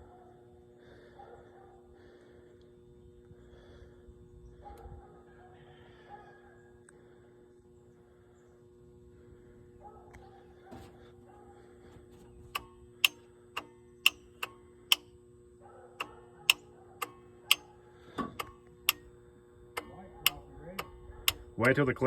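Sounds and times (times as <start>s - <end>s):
faint steady hum: 0.0s - 22.0s
relay clicking: 16.0s - 22.0s.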